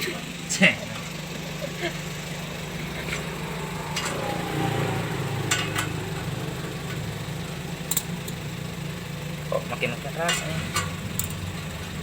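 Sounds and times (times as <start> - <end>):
engine idling with whistle: 0.0 - 12.0.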